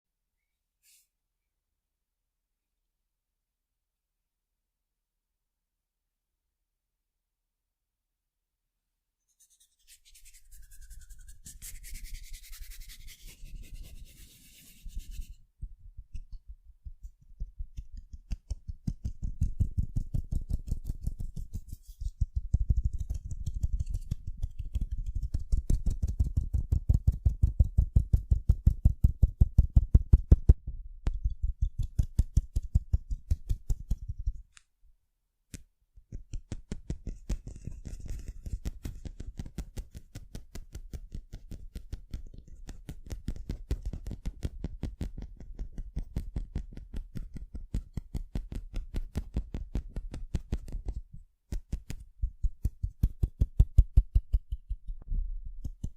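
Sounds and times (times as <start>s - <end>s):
scratchy rustle: 9.4s - 15.4s, 20.8s - 22.2s.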